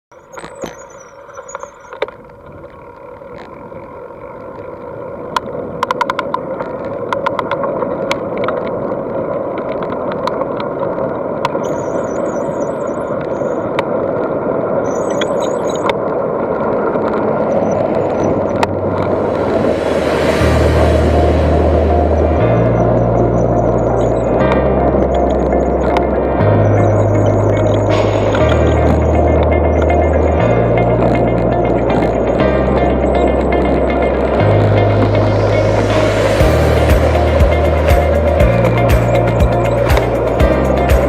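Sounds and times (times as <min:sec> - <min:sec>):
mountain bike rolling noise: 0:00.5 - 0:12.1, 0:15.8 - 0:19.4.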